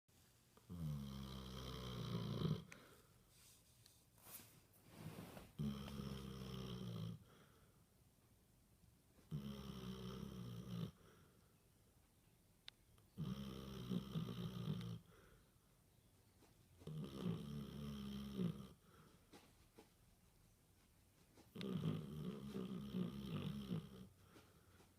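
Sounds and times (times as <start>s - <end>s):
dog snoring: 0.7s - 2.9s, 5.1s - 7.4s, 9.2s - 11.2s, 13.2s - 15.3s, 16.8s - 19.1s, 21.5s - 24.9s.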